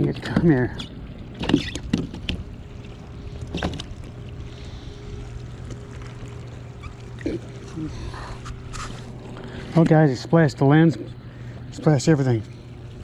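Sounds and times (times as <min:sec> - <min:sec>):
fish splashing and thrashing: 0:00.0 - 0:10.0
steady low hum: 0:00.0 - 0:13.0.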